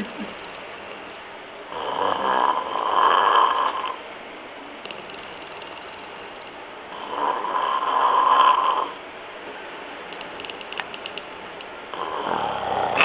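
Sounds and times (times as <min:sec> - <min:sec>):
man snoring heavily: 0:01.7 - 0:04.0, 0:07.0 - 0:09.0, 0:12.0 - 0:13.0
faint clicks: 0:10.1 - 0:11.7.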